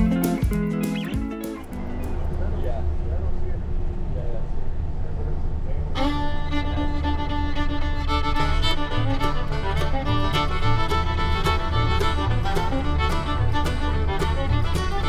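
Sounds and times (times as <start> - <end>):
upbeat fiddle tune with beat: 0.0 - 2.3, 6.0 - 15.0.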